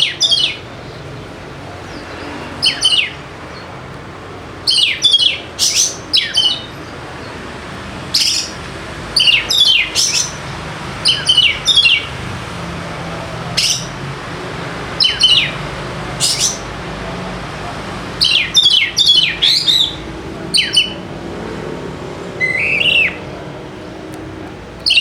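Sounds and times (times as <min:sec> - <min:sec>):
bird whistling calls: 0:00.0 - 0:00.7, 0:02.0 - 0:03.2, 0:04.7 - 0:06.7, 0:08.1 - 0:08.6, 0:09.2 - 0:10.4, 0:11.0 - 0:12.1, 0:13.6 - 0:14.0, 0:15.0 - 0:15.6, 0:16.2 - 0:16.6, 0:18.2 - 0:21.0, 0:22.4 - 0:23.3, 0:24.8 - 0:25.0.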